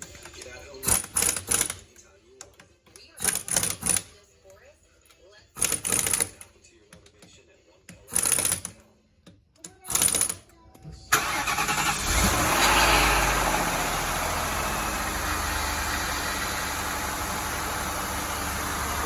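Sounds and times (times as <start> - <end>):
car engine starting and idling: 11.1 - 19.0.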